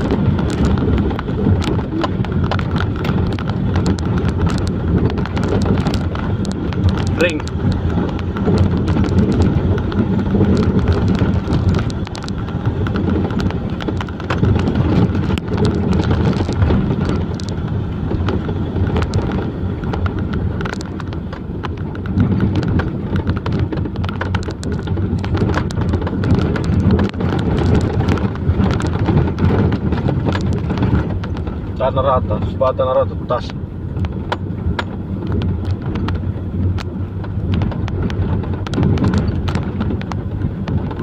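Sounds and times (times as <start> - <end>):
rattling and clattering: 0.0 - 41.0
truck engine humming: 0.0 - 41.0.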